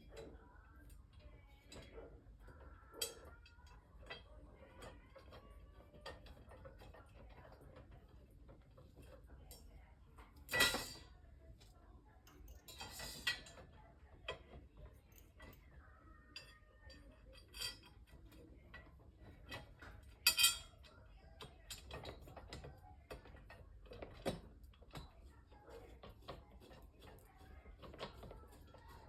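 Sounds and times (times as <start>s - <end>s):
metal parts clicking and clinking: 19.5s - 22.7s.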